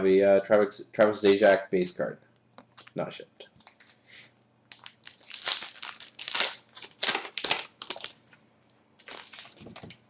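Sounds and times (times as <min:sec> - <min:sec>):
foil wrapper crinkling: 0:03.6 - 0:04.1, 0:04.7 - 0:08.2, 0:09.0 - 0:10.0.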